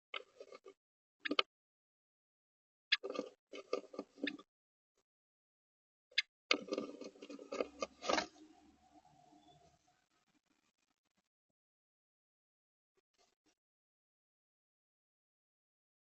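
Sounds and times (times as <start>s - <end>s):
bird scratching in nest material: 3.0s - 4.4s, 6.5s - 8.3s.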